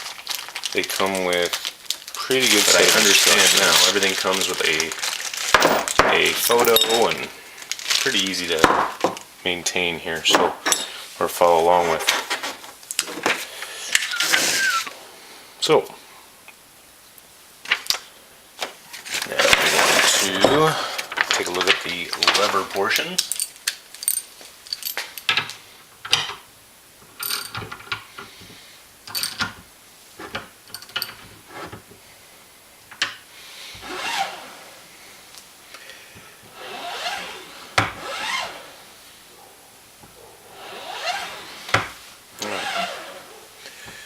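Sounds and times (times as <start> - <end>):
metal clinks and clicks: 5.6 - 7.2
press ram grinding: 40.5 - 41.8, 42.4 - 43.3.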